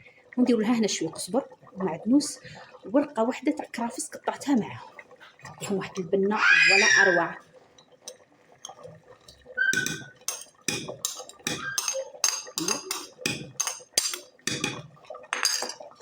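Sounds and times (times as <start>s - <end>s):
spoon scraping a pot: 9.8s - 14.8s.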